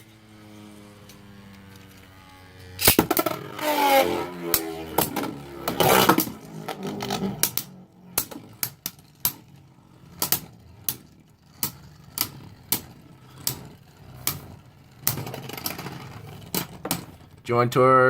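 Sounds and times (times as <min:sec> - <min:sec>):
faint low whir of spinning: 0:00.0 - 0:17.5
spinning tops clashing with clicks: 0:02.7 - 0:03.8, 0:04.5 - 0:17.4.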